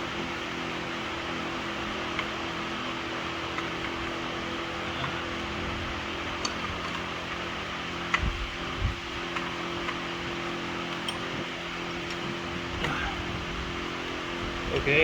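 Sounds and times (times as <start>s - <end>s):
steady background hum: 0.0s - 15.0s
light metal clicks: 10.9s - 12.8s.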